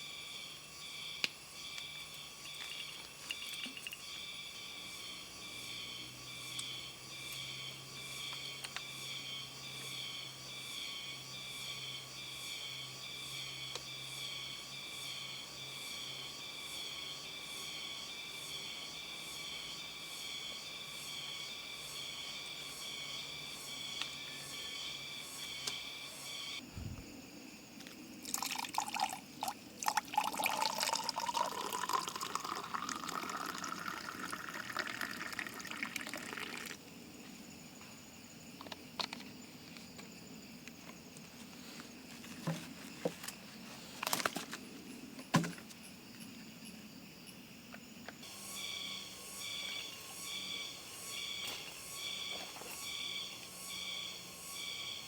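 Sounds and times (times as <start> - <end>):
water poured into container: 28.2 - 36.8.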